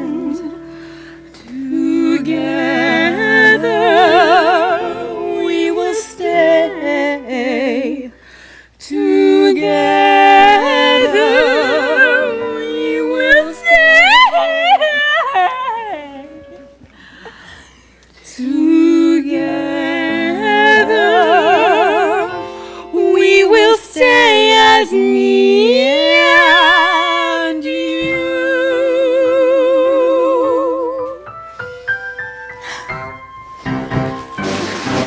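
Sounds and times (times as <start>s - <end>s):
musical accompaniment: 0.0s - 8.0s, 19.4s - 25.0s, 30.6s - 35.0s
singers holding notes with vibrato: 0.0s - 16.8s, 18.4s - 31.9s.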